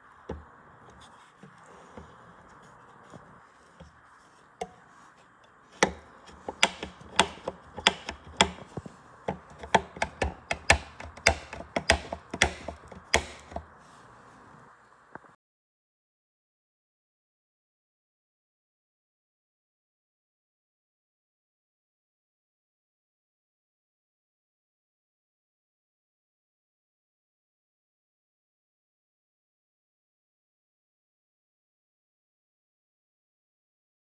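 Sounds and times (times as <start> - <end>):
bike trainer knocking: 5.8 - 13.7.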